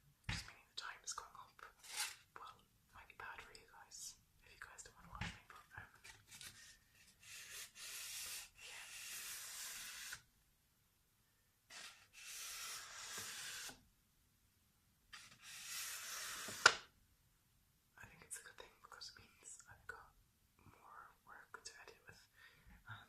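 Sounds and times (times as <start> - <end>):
paper rubbing: 6.0 - 10.2, 11.7 - 13.8, 15.2 - 16.8.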